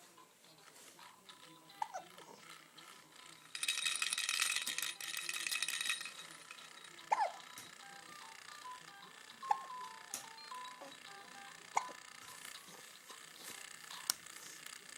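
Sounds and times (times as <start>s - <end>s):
baby rattle shaken: 3.3s - 7.8s.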